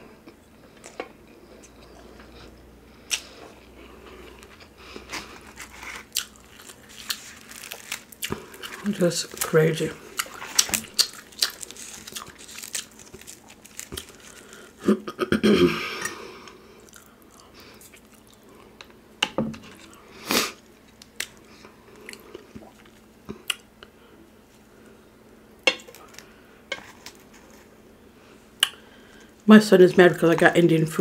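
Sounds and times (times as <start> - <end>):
person chewing crunchy food: 0.2 - 14.9, 16.1 - 18.8, 19.6 - 24.0.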